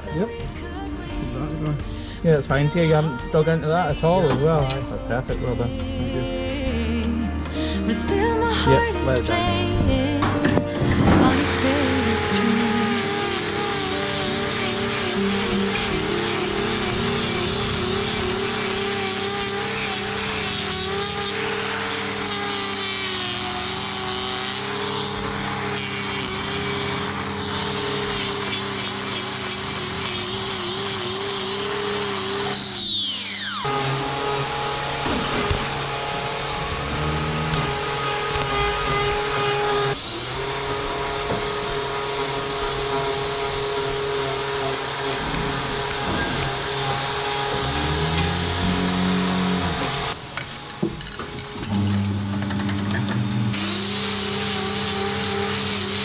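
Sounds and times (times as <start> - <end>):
angle grinder whining: 0.0 - 56.0.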